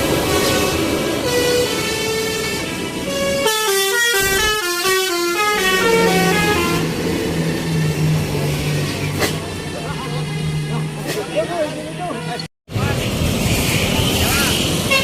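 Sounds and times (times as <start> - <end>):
musical air horn melody: 0.2 - 6.9.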